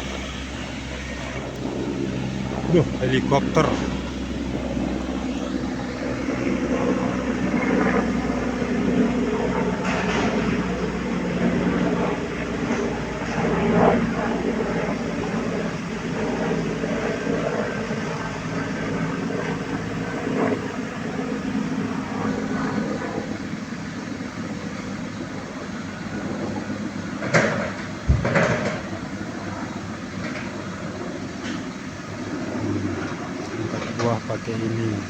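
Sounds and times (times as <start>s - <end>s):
loader engine running: 0.0s - 13.4s.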